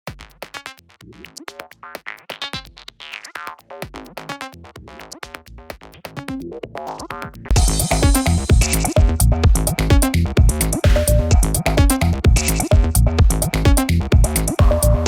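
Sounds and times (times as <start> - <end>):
percussive clicks beat: 7.5 - 15.0
synthesizer notes: 9.8 - 15.0.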